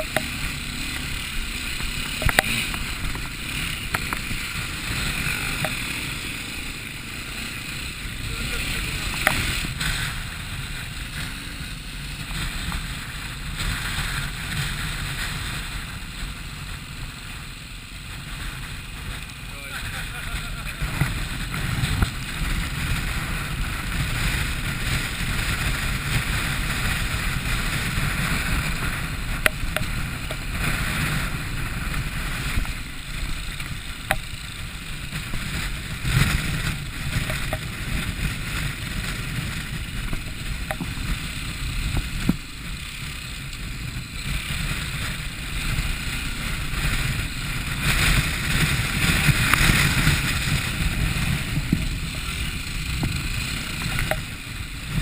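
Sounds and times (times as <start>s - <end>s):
wind: 0.0s - 55.0s
sharp clicks or knocks: 2.1s - 2.9s.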